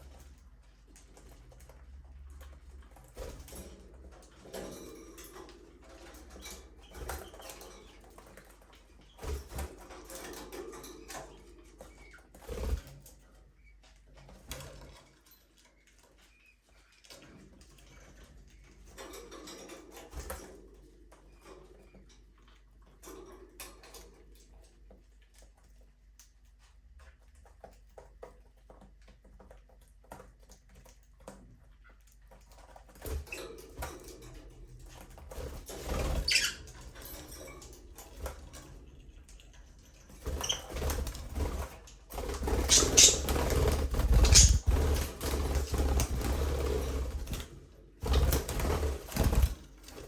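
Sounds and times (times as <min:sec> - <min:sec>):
budgerigars chirping: 0:42.5 - 0:43.4, 0:44.1 - 0:44.7.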